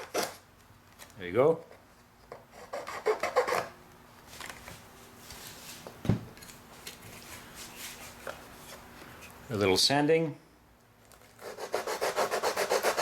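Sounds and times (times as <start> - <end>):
rasping on wood: 11.4 - 13.0.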